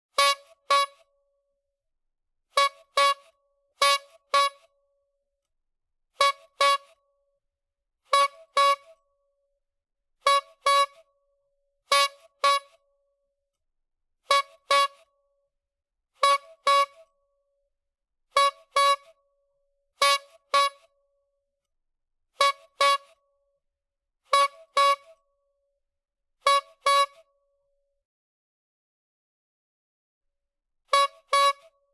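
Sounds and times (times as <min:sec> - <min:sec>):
clown horn honking: 0:00.2 - 0:01.0, 0:06.2 - 0:07.0, 0:08.1 - 0:08.9, 0:10.3 - 0:11.0, 0:14.3 - 0:15.0, 0:16.2 - 0:17.0, 0:18.4 - 0:19.1, 0:20.0 - 0:20.8, 0:22.4 - 0:23.2, 0:24.3 - 0:25.2, 0:26.4 - 0:27.2, 0:30.9 - 0:31.7.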